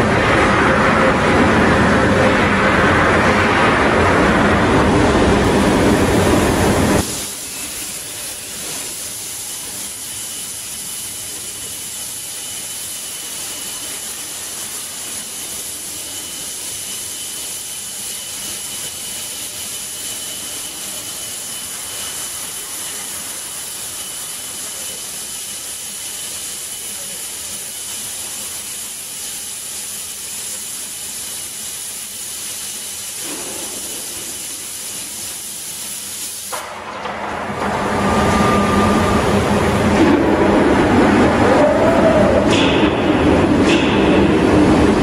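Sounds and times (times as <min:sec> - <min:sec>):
loud rush of noise: 0:00.0 - 0:07.3, 0:36.5 - 0:45.0
faint high whine: 0:00.0 - 0:25.3, 0:36.5 - 0:42.4
cutting torch hissing: 0:00.0 - 0:36.9.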